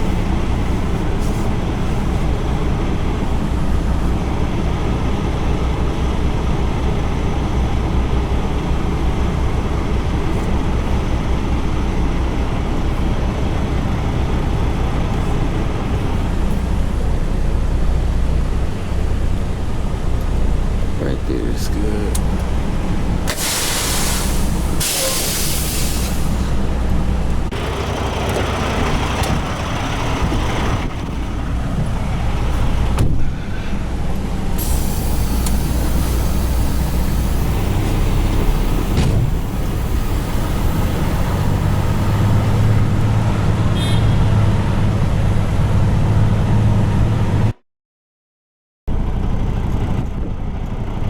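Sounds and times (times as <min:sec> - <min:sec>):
truck diesel engine running: 0:00.0 - 0:47.5, 0:48.9 - 0:51.0
air brakes hissing: 0:23.3 - 0:26.8, 0:33.2 - 0:43.0.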